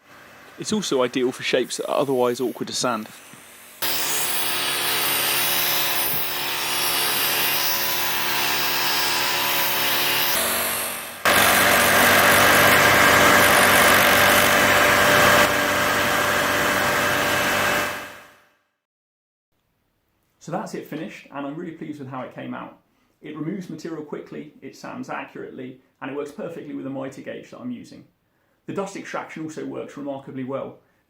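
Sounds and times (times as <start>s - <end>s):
disc sander running: 0.4s - 18.3s
wood being sanded: 0.7s - 18.1s.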